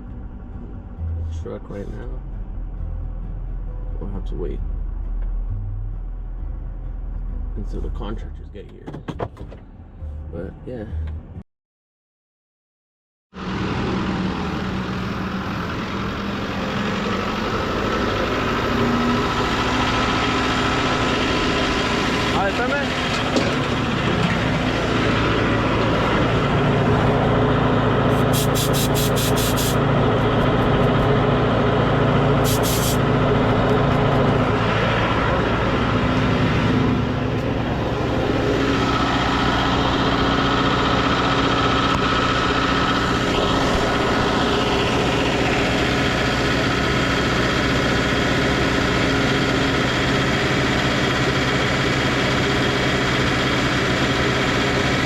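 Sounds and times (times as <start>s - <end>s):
engine idling: 13.4s - 55.0s.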